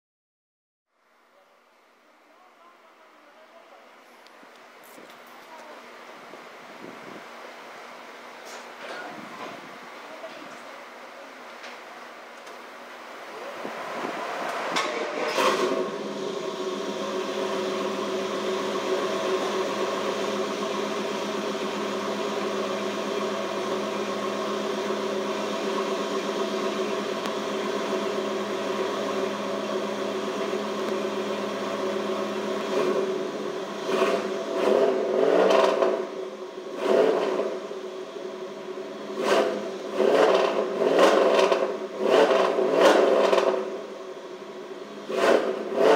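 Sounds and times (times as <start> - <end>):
car engine idling: 1.0 - 45.9
engine throttle blips: 12.4 - 45.9.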